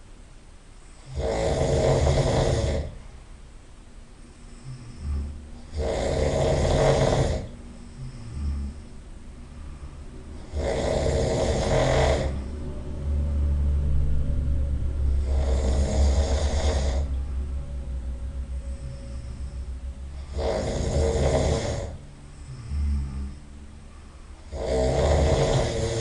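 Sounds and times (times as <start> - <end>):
low rattling snore: 0.8 - 3.1, 4.2 - 26.0
noisy breaths: 4.0 - 26.0.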